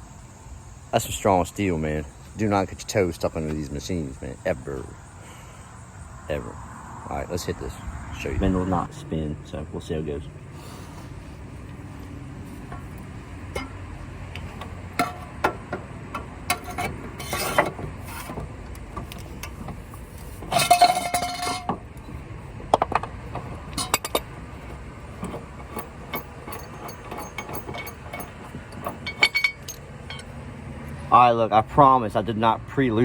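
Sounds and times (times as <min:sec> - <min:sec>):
metallic clatter with ringing: 0:12.5 - 0:18.4, 0:20.5 - 0:21.8, 0:22.7 - 0:30.4
wrench clinking on metal: 0:12.6 - 0:13.8, 0:20.5 - 0:21.8, 0:22.9 - 0:30.4.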